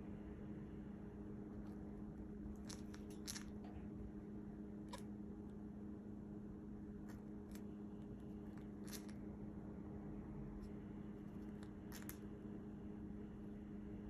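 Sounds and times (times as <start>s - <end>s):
low hum: 0.0s - 14.0s
cockatiel hiccuping clicks: 11.6s - 12.2s.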